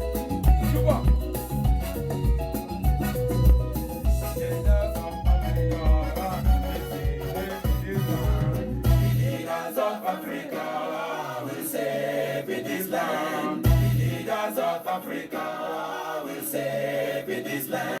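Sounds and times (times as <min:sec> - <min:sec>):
deep bass hit: 0:02.8 - 0:09.3, 0:13.7 - 0:14.2
voices singing in harmony: 0:04.2 - 0:18.0.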